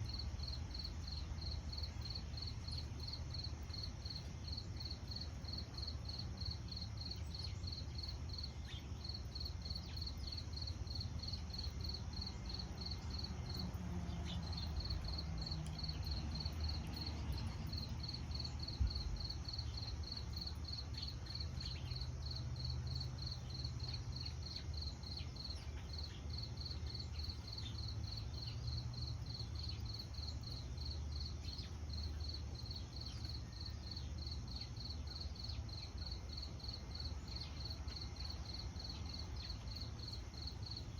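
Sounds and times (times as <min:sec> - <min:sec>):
cricket chirping: 0:00.0 - 0:40.9
low outdoor rumble: 0:10.8 - 0:32.9.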